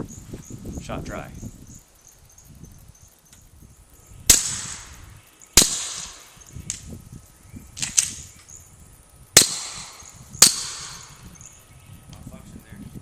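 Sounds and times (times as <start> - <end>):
suppressed pistol shots: 4.3 - 5.0, 5.6 - 6.3, 9.4 - 11.2.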